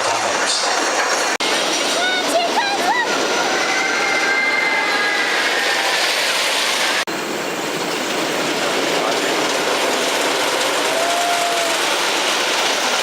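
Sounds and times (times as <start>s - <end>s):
roller coaster train rushing on track: 0.0s - 13.0s.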